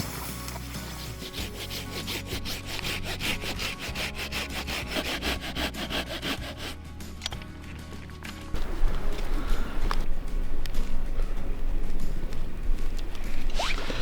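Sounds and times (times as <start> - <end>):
hand saw rasping on wood: 0.6 - 6.9.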